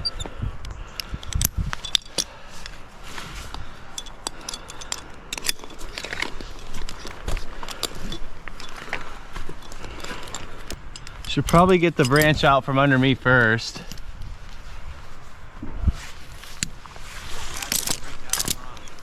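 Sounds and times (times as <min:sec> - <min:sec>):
wind rumbling on microphone: 0:00.0 - 0:02.0, 0:05.9 - 0:19.0.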